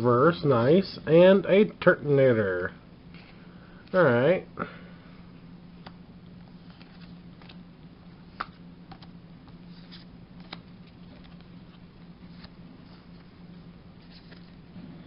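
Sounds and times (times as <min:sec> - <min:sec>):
steady low hum: 0:00.0 - 0:15.0
trading cards being handled: 0:05.8 - 0:07.6, 0:08.2 - 0:14.7.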